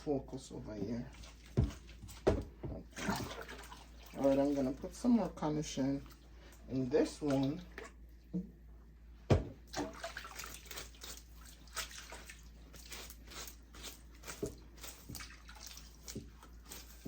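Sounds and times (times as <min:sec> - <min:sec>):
splashing and squelching in water: 0:00.9 - 0:08.0, 0:09.6 - 0:17.0
thump: 0:09.3 - 0:09.6.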